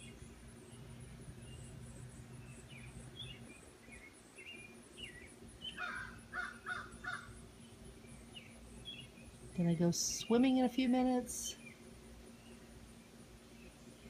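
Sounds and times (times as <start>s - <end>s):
high insect trill: 0.0s - 14.0s
songbirds chirping: 0.0s - 14.0s
crows cawing: 5.8s - 7.3s.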